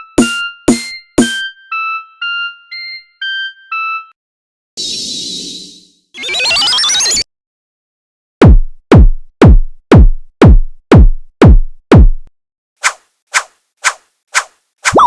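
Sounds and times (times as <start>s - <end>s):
deep drum-machine thuds: 8.4s - 12.3s.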